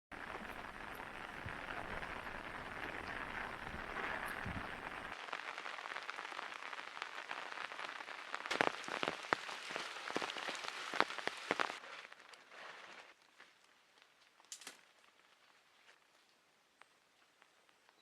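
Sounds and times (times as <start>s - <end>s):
potatoes frying in hot oil: 0.1s - 11.8s
oil popping and crackling: 0.1s - 18.0s.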